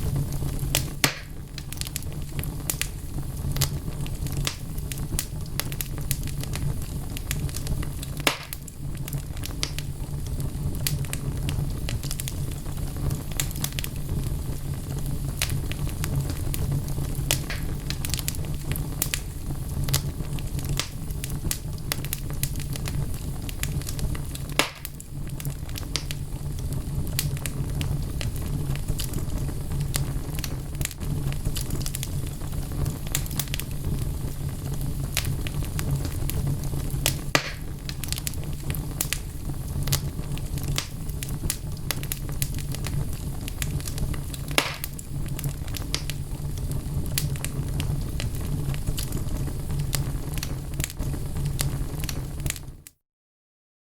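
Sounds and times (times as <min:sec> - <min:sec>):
logs crackling in fireplace: 0:00.0 - 0:52.9
loud fire pops: 0:00.0 - 0:52.9
low fire rumble: 0:00.0 - 0:52.9.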